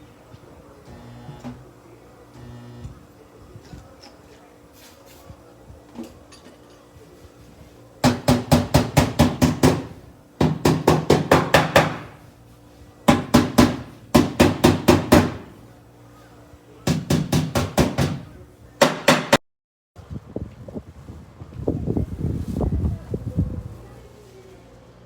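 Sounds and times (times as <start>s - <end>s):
hammer tapping on sheet metal: 8.0s - 12.2s, 13.1s - 15.6s, 16.8s - 19.4s.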